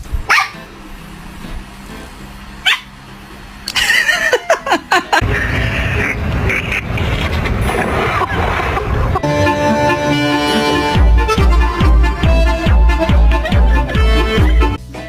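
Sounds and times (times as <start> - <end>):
dog barking and yelping: 0.2 - 0.7, 2.6 - 3.0
steady rushing noise: 5.2 - 11.2.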